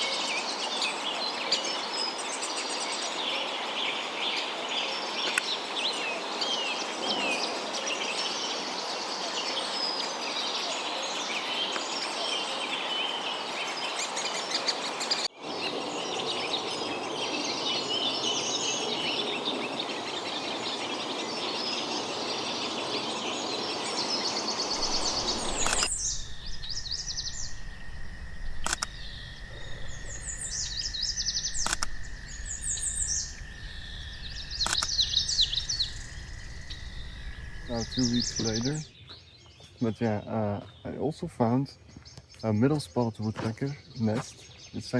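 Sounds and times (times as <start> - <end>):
birds chirping and singing: 0.0 - 27.6, 29.0 - 44.9
steady hiss: 13.4 - 38.9
low rumble: 24.7 - 38.7
sharp clicks: 25.5 - 25.9, 28.6 - 29.0, 31.6 - 32.0, 34.6 - 35.0
short high bird calls: 37.6 - 41.1.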